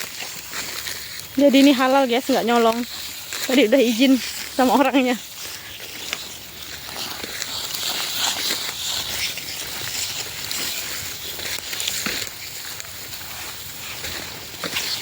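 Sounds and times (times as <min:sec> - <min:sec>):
dry leaves and twigs rustling: 0:00.0 - 0:15.0
twigs snapping: 0:05.3 - 0:13.2.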